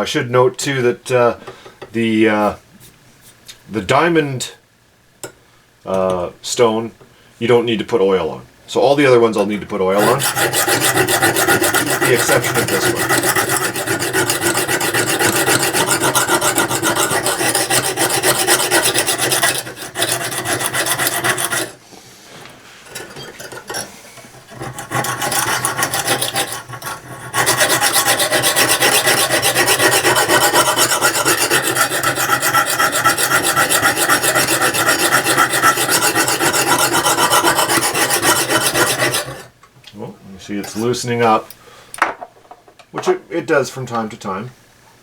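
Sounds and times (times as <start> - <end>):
sharpening stone rasping on steel: 10.0 - 21.8, 22.9 - 39.5.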